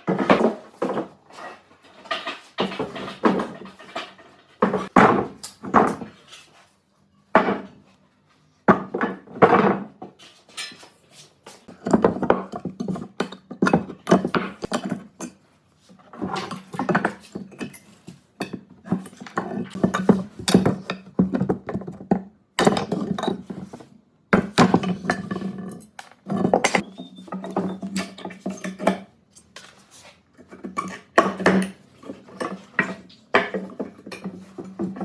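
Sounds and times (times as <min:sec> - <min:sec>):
hard objects knocking and clinking: 0:11.7 - 0:15.4, 0:24.4 - 0:29.6.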